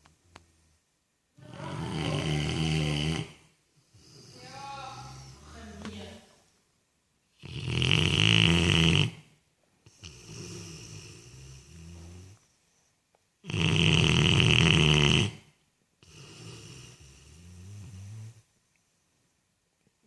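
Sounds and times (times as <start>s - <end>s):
dog snoring: 1.4s - 5.7s, 7.4s - 9.3s, 9.9s - 12.5s, 13.4s - 18.5s.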